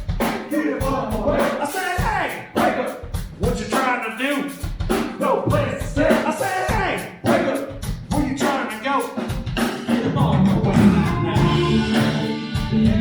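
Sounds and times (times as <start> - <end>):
drum kit steady beat: 0.0 - 13.0
live band playing: 0.0 - 13.0.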